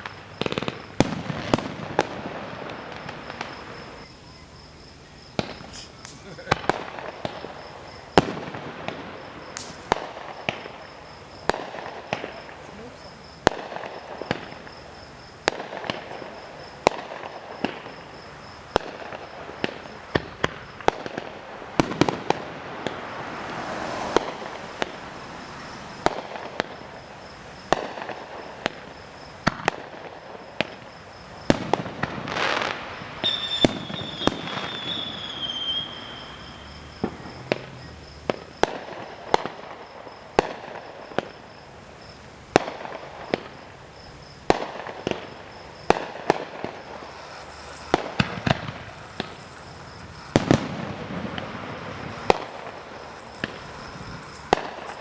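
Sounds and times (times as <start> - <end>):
fireworks bangs: 0.0 - 55.0
fireworks crackling: 0.0 - 55.0
high falling whistle: 33.2 - 38.0.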